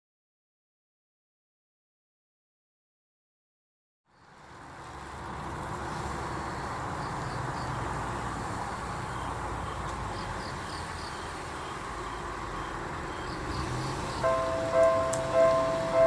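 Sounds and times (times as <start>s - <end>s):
distant traffic rumble: 4.1s - 16.0s.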